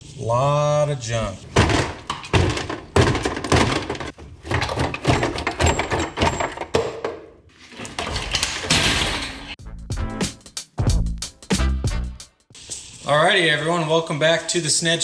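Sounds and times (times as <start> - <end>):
tools and parts clanking: 1.6 - 9.6.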